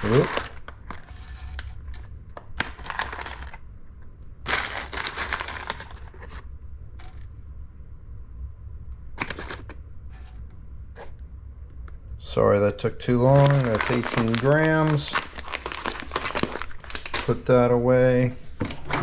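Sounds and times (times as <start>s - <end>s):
coffee beans rattling into container: 0.0s - 3.6s, 4.5s - 6.4s, 13.1s - 17.4s.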